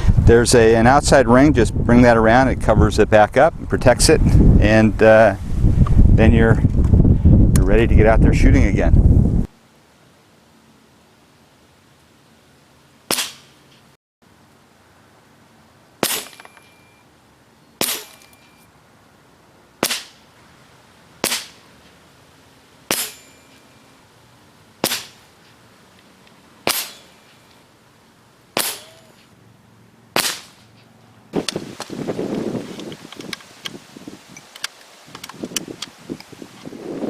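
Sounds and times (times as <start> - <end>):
air rifle shots: 13.1 - 13.6, 16.0 - 16.6, 17.8 - 18.3, 19.8 - 20.2, 21.2 - 21.6, 22.9 - 23.4, 24.8 - 25.3, 26.6 - 27.3, 28.6 - 29.2, 30.2 - 30.7.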